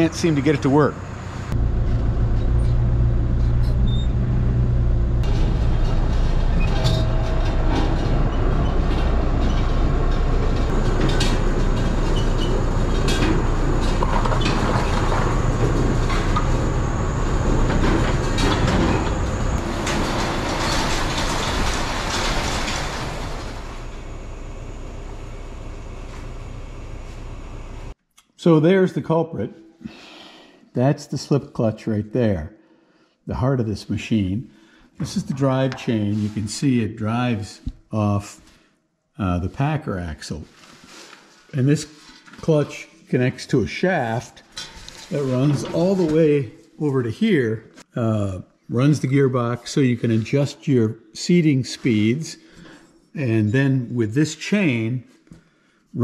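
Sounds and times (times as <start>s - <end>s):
engine running: 0.0s - 28.0s
metal rattling and clanking: 1.6s - 27.9s.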